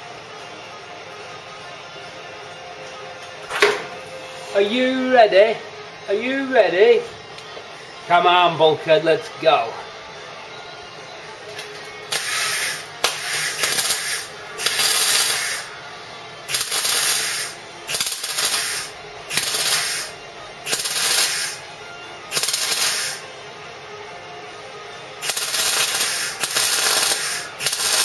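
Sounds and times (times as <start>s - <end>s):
welder arc crackling: 12.1s - 15.7s, 16.4s - 21.6s, 22.3s - 23.2s, 25.2s - 28.0s.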